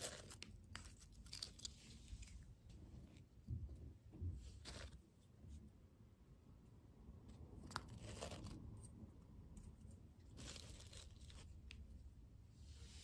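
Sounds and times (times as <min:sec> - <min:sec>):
candy packaging crinkling: 0:00.0 - 0:02.4.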